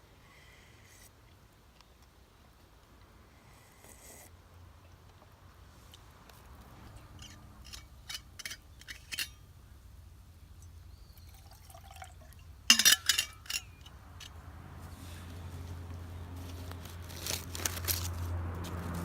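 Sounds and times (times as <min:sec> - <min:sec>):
camp cookware clinking: 0:06.9 - 0:09.6, 0:10.6 - 0:14.4
liquid dripping: 0:10.6 - 0:12.9.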